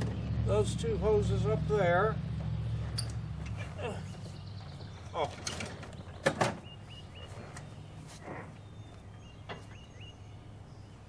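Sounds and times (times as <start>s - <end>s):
bird chirping: 2.2s - 11.0s.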